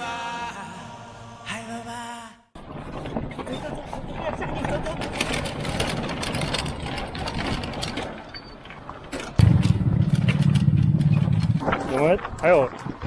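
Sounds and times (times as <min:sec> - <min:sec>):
engine clatter: 0:09.2 - 0:12.5
low engine drone: 0:09.4 - 0:12.0.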